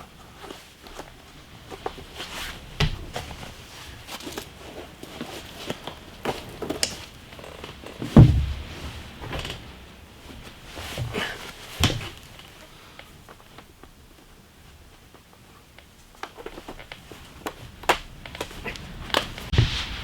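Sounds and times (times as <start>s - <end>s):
knocks and thumps of handling: 1.7s - 9.7s, 10.4s - 12.6s
heavy thud: 8.2s - 8.9s, 19.5s - 20.0s.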